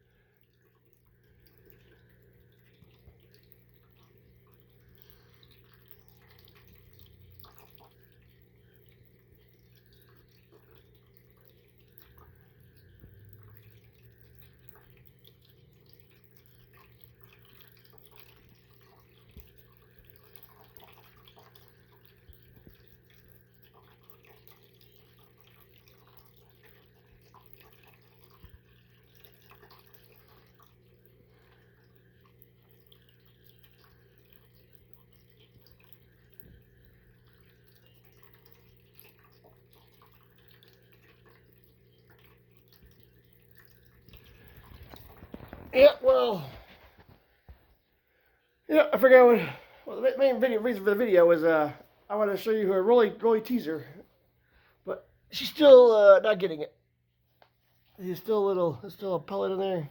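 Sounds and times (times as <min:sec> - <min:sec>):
low steady hum: 0:00.0 - 0:59.9
water trickling and dripping: 0:00.0 - 0:59.9.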